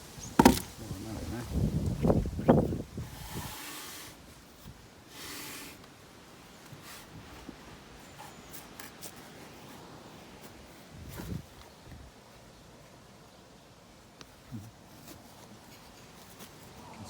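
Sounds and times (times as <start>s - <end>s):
soft thump: 0.4s - 0.7s.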